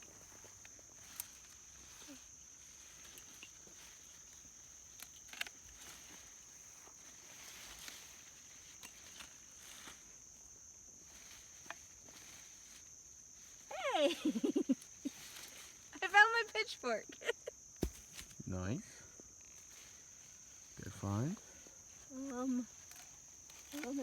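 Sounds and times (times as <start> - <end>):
crickets trilling: 0.0 - 24.0.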